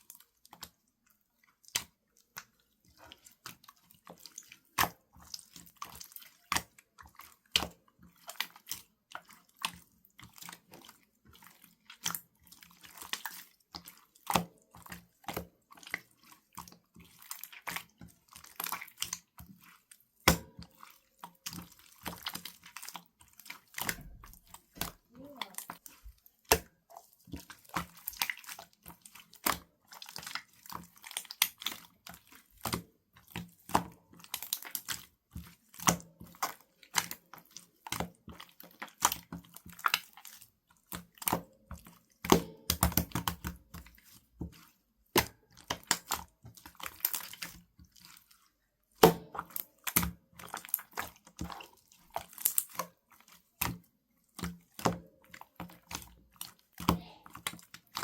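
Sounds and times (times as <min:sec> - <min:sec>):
slime squished by hand: 0:21.6 - 0:32.8.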